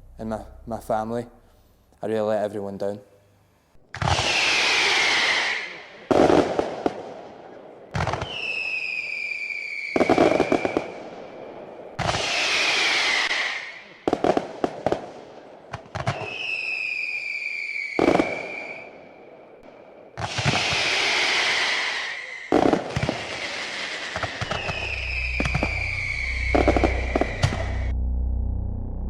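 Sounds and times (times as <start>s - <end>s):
low pulsing music: 0.0s - 1.6s, 25.0s - 29.0s
firework bangs and crackling: 3.9s - 27.9s
whistling rockets: 3.9s - 27.9s.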